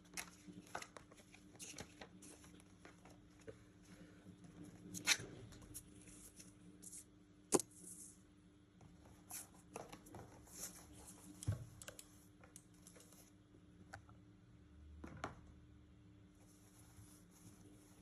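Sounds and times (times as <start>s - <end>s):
crinkly rustling: 0.0s - 7.0s
faint steady hum: 0.0s - 18.0s.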